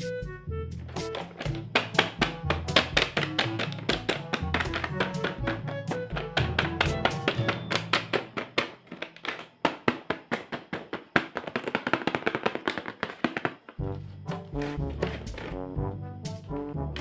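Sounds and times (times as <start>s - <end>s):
music with bass and brass: 0.0s - 1.1s, 13.8s - 17.0s
rapid sharp taps and clicks: 1.0s - 13.8s.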